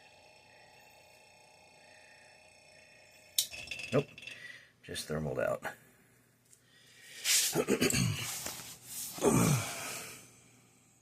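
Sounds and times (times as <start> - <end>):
man sighing: 9.2 - 10.2.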